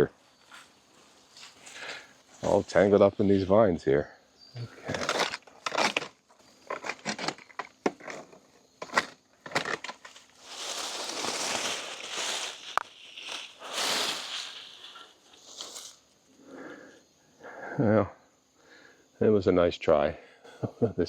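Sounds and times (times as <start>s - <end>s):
leaves and stems rustling: 0.0s - 3.5s, 4.8s - 16.2s.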